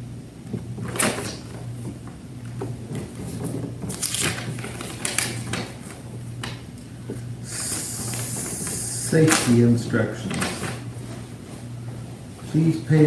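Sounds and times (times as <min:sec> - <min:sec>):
steady low hum: 0:00.0 - 0:13.0
handling rustles and knocks: 0:00.5 - 0:07.3.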